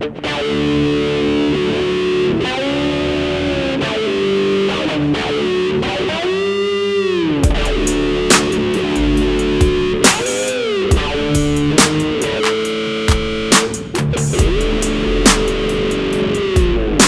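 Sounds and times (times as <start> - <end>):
distorted electric guitar: 0.0 - 17.0
deep bass: 7.4 - 10.0, 14.1 - 17.0
sharp drum hits: 7.4 - 17.0.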